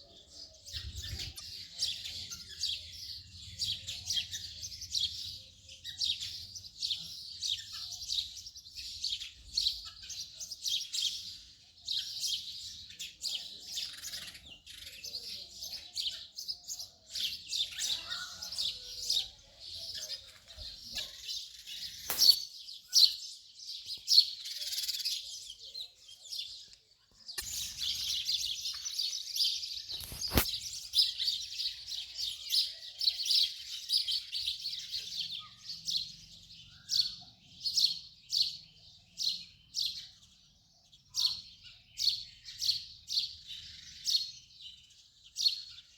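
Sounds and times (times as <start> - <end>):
sparrow chirping: 0.0 - 45.9
sharp clicks: 22.1 - 22.4.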